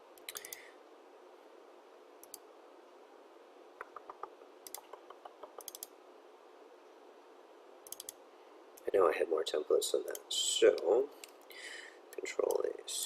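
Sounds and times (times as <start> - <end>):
faint steady hiss: 0.0 - 13.0
mouse and keyboard clicks: 3.8 - 5.9, 7.9 - 8.2.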